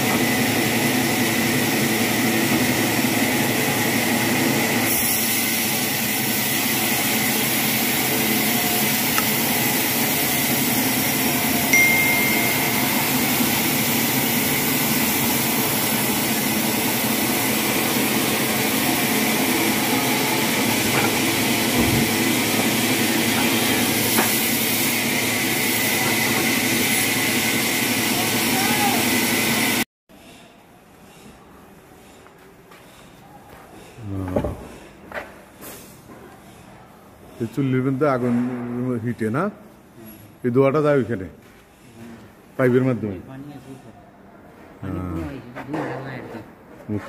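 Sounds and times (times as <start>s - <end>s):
machinery humming: 11.1s - 29.8s.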